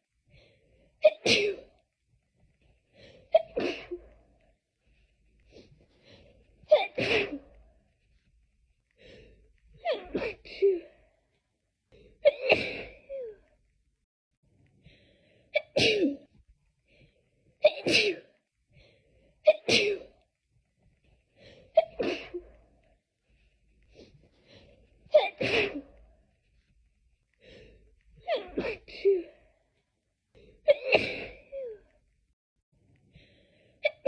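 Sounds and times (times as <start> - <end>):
person sneezing: 6.7 - 7.5, 12.3 - 13.3, 15.6 - 16.3, 17.6 - 18.3, 25.1 - 26.0, 30.7 - 31.8.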